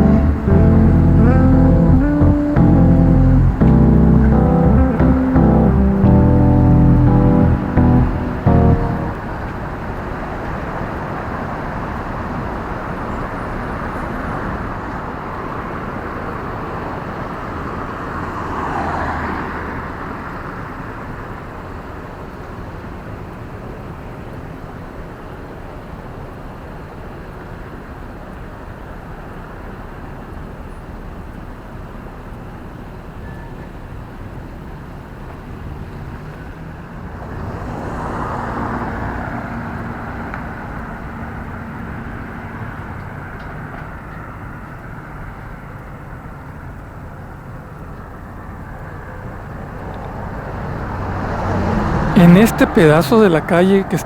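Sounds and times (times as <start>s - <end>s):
road traffic hum: 0.0s - 21.7s, 34.3s - 54.0s
vehicle passing close by: 50.1s - 52.8s.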